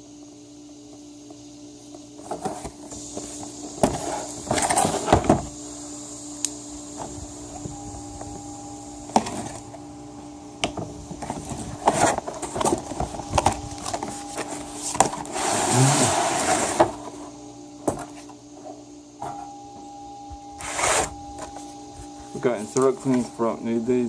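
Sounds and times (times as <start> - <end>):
faint steady hum: 0.0 - 24.0
cardboard rustling and scraping: 2.1 - 5.5, 9.1 - 9.8, 10.6 - 19.5, 20.6 - 23.5.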